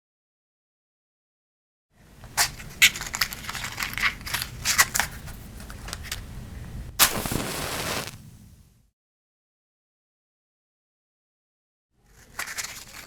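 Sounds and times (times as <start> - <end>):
match scratching on matchbox: 2.2 - 6.2, 7.0 - 8.3, 12.2 - 13.0
match flaring with a hiss: 7.0 - 8.8.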